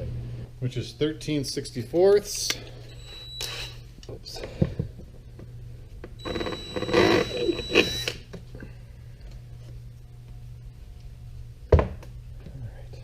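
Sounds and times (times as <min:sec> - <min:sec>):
electric drill whining: 0:02.9 - 0:03.8, 0:06.2 - 0:08.2.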